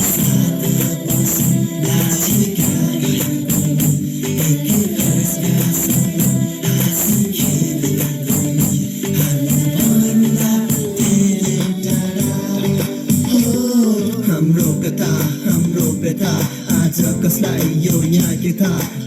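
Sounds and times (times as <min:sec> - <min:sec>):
rattling tambourine-like percussion: 0:00.0 - 0:13.7
instrumental music with steady beat: 0:00.0 - 0:19.0.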